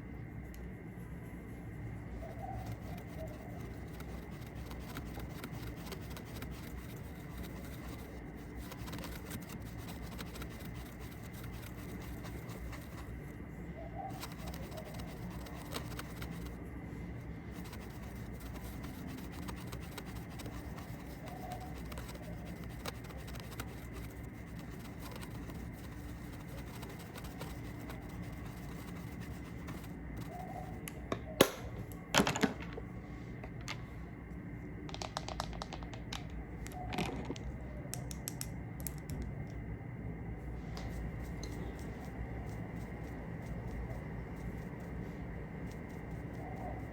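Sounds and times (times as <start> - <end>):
makeup cases tapping and clicking: 34.9 - 36.3.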